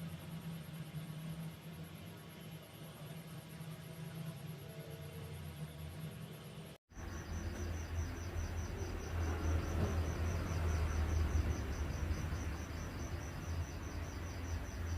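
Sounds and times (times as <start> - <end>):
insect chirping: 0.0 - 14.9
steady low hum: 0.0 - 14.9.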